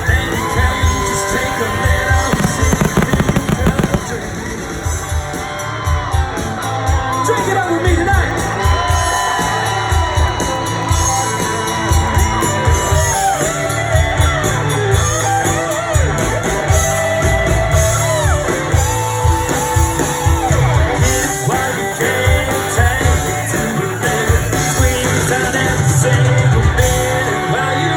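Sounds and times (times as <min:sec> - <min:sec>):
amplified guitar: 0:00.8 - 0:04.6
drum beat: 0:02.3 - 0:04.3.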